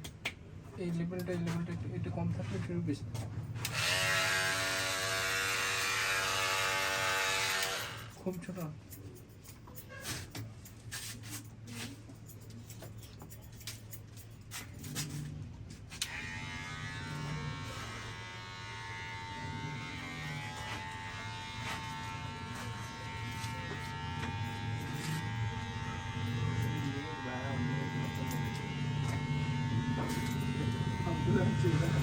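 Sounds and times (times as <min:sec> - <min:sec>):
small electric motor buzzing: 0:03.6 - 0:08.2, 0:16.0 - 0:32.0
low hum: 0:16.2 - 0:32.0.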